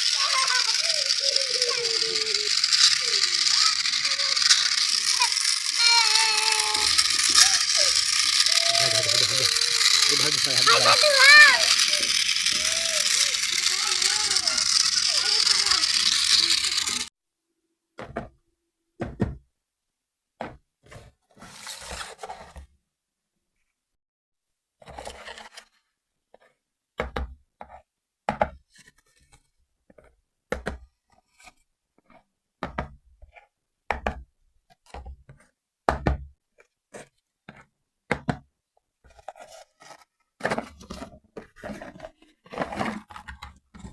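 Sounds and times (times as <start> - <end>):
toy motor rattling whir: 0.0 - 17.1, 39.1 - 43.9.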